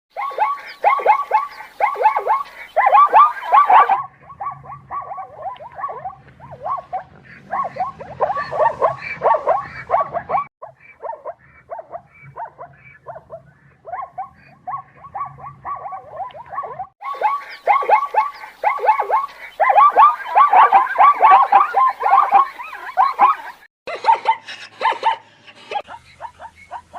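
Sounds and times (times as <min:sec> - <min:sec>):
zebras barking: 0:00.2 - 0:24.4.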